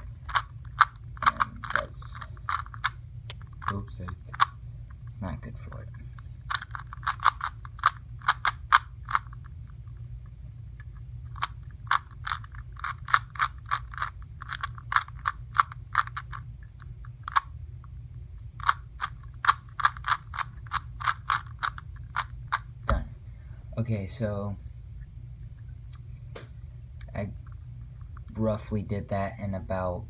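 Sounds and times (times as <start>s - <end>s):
plastic puzzle cube clicking: 0.3s - 3.7s, 4.3s - 4.5s, 6.5s - 9.4s, 11.3s - 16.4s, 17.2s - 17.5s, 18.6s - 22.7s.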